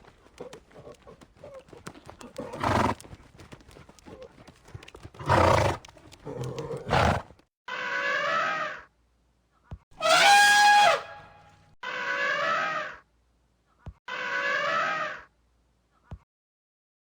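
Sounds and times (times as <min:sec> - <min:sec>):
hoof clicks: 0:00.0 - 0:07.4
horse call: 0:10.0 - 0:13.0, 0:14.1 - 0:15.3.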